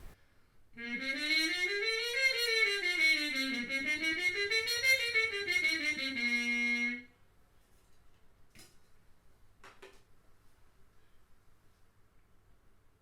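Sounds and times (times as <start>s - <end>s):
trumpet playing: 0.8s - 7.1s.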